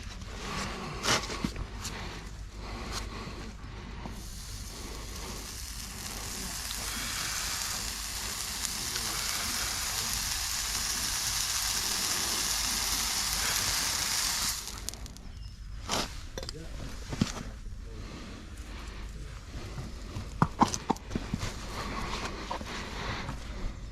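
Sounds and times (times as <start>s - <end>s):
hot horseshoe sizzling: 4.1s - 16.2s.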